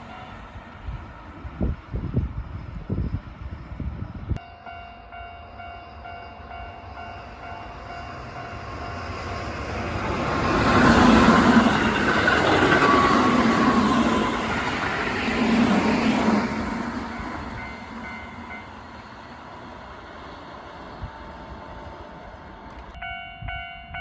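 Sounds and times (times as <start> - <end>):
electric train passing: 0.0 - 24.0
level-crossing warning bell: 4.4 - 15.4, 17.0 - 19.0, 23.0 - 24.0.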